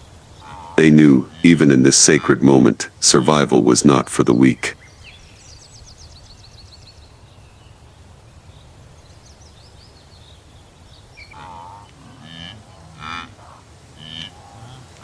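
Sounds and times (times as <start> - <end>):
small birds twittering: 0.0 - 15.0
wildebeest lowing grunts: 0.4 - 4.8, 11.3 - 15.0.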